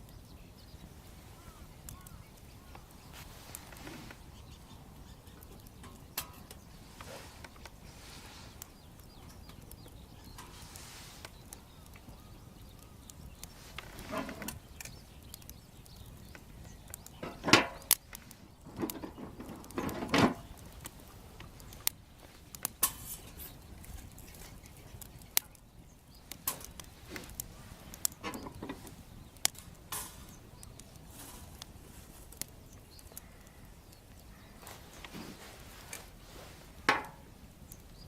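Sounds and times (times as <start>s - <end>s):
bonfire wood crackling: 0.0s - 38.0s
logs knocking and rustling: 13.7s - 15.0s, 17.1s - 23.3s, 26.4s - 30.2s, 34.6s - 37.3s
sharp pops: 26.2s - 31.0s.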